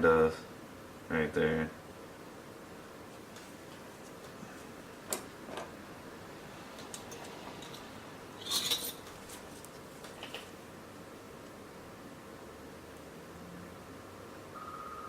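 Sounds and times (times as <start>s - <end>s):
small tools clicking and clinking: 6.8s - 9.0s.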